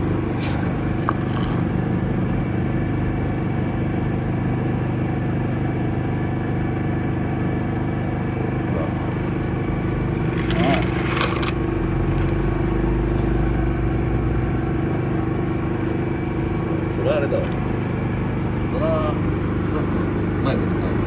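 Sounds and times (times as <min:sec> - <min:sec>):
engine droning: 0:00.0 - 0:21.0
brief rattle: 0:00.4 - 0:01.7, 0:10.1 - 0:12.5.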